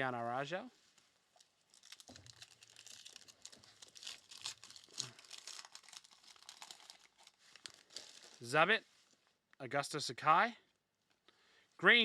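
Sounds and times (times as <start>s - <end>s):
plastic wrapper crinkling and tearing: 0.8s - 9.2s.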